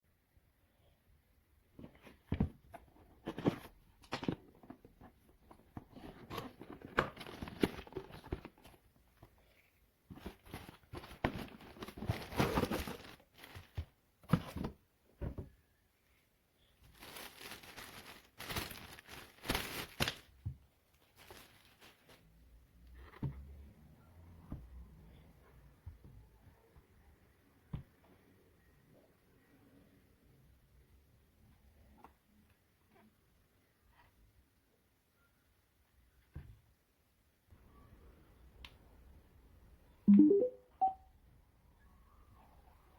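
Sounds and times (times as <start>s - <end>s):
packaging rustling and tearing: 10.2s - 14.7s, 16.8s - 20.4s, 21.0s - 22.2s.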